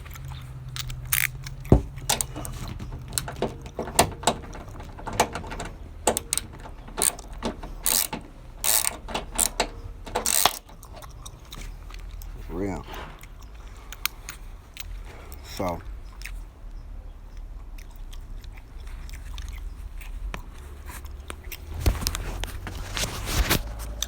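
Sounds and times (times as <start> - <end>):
metal tools clanking: 0.0 - 16.2
hand ratchet clicking: 0.1 - 10.9.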